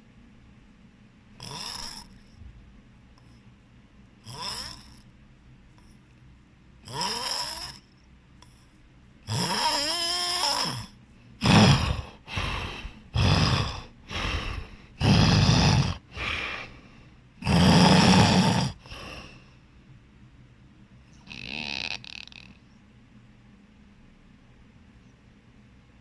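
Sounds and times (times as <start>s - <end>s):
person snoring loudly: 1.4s - 2.2s, 4.2s - 5.0s, 6.8s - 7.8s, 9.3s - 16.7s, 17.4s - 19.3s, 21.2s - 22.6s.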